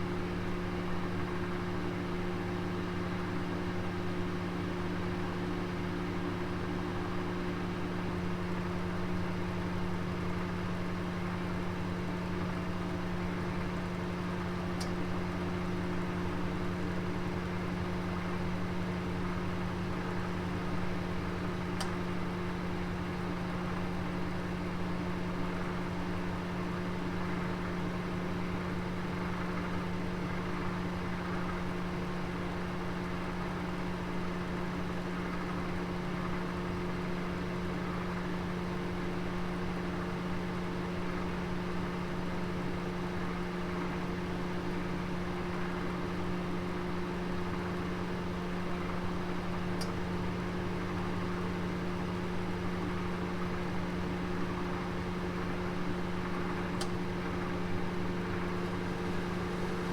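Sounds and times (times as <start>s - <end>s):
oven humming: 43.4s - 59.9s
faint click: 56.8s - 57.0s.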